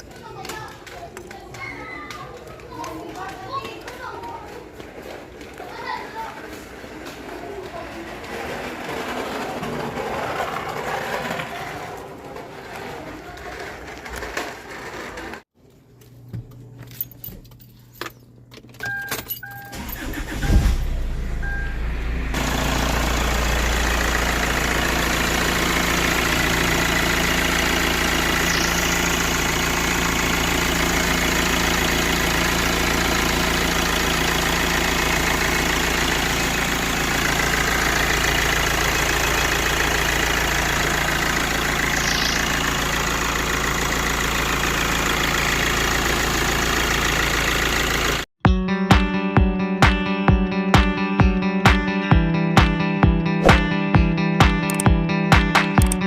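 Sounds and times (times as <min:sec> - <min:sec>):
engine starter cranking: 0:18.6 - 0:48.3, 0:54.6 - 0:54.9, 0:55.6 - 0:56.0
short beeps: 0:18.8 - 0:19.8, 0:20.4 - 0:22.1
car engine idling: 0:19.7 - 0:48.3
clicks: 0:54.6 - 0:56.0.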